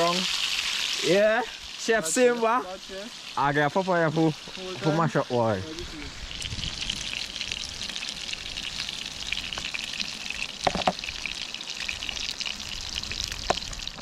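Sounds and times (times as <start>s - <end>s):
hot oil sizzling and crackling: 0.0s - 14.0s.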